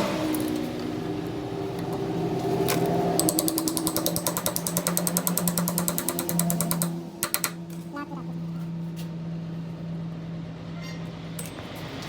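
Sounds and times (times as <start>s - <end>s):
machine humming: 0.0s - 10.2s
fast mechanical clicks: 3.2s - 7.6s.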